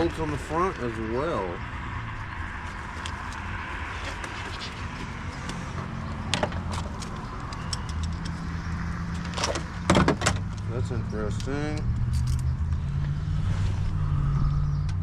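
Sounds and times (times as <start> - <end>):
metal tools clinking on engine parts: 6.3 - 8.5, 11.4 - 12.5.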